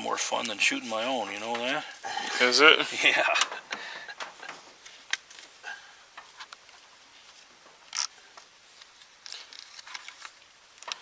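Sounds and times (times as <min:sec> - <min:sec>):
rustling: 0:00.0 - 0:11.0.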